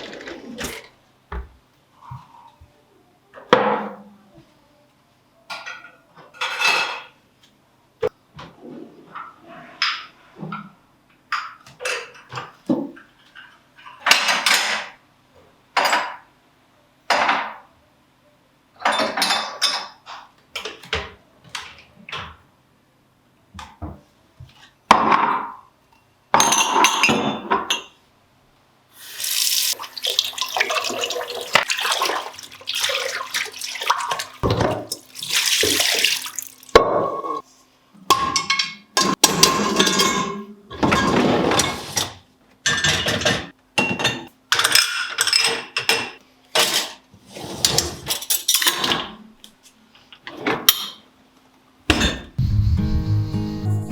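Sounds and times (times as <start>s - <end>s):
tap water running into sink: 29.0s - 36.8s.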